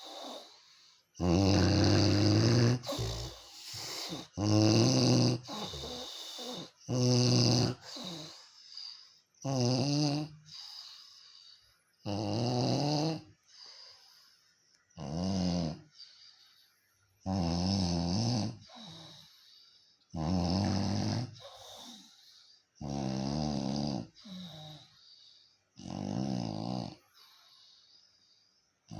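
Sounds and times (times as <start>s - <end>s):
faint breaths: 0.0s - 6.9s, 7.5s - 9.4s, 10.3s - 12.0s, 13.3s - 14.9s, 15.8s - 17.2s, 18.5s - 22.8s, 24.0s - 25.8s, 26.9s - 28.9s
person snoring: 0.0s - 11.0s, 12.1s - 13.3s, 15.0s - 15.9s, 17.3s - 19.2s, 20.1s - 22.0s, 22.8s - 24.9s, 25.8s - 27.0s.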